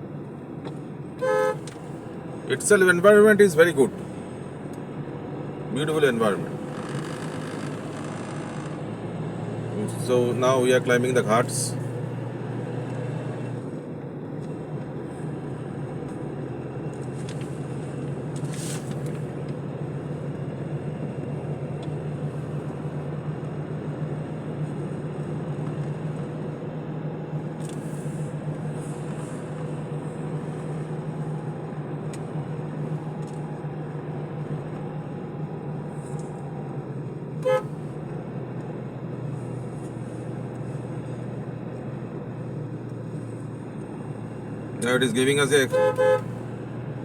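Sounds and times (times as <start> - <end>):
car engine and road noise: 0.0 - 47.0
vehicle horn toot: 1.2 - 1.7, 37.4 - 37.8, 45.6 - 46.4.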